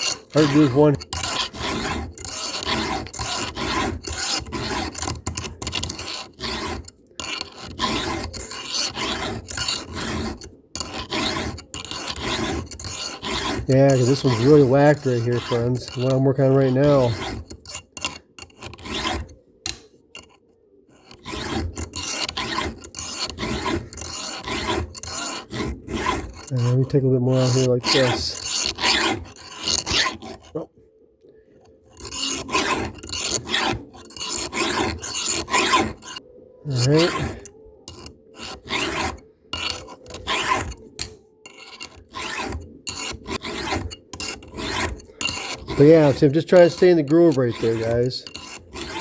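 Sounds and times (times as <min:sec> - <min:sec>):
file rasping on chain tooth: 0:00.0 - 0:30.6, 0:31.9 - 0:49.0.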